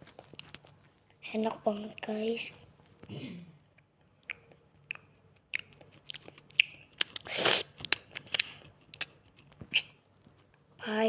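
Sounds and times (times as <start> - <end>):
person chewing food: 0.0 - 1.1, 3.6 - 10.7.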